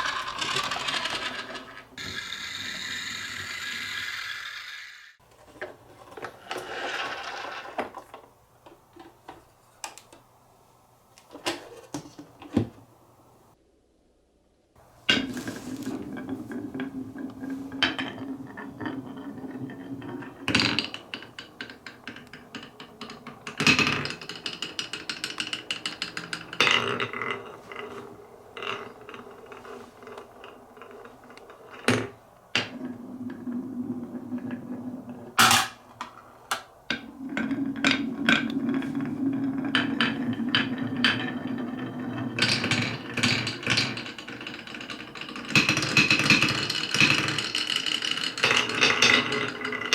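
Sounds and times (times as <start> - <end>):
marbles rolling on wooden tracks: 0.0 - 10.3, 14.8 - 49.9.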